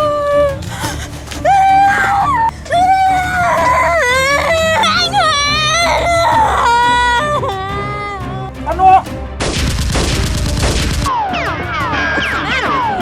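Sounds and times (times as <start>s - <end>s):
wailing voice: 0.0s - 9.0s
action film music: 0.0s - 13.0s
rapid gunfire: 9.4s - 11.2s.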